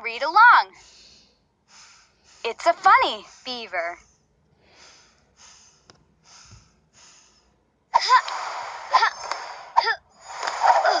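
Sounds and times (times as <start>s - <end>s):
faint breathy puffs: 0.7s - 7.6s.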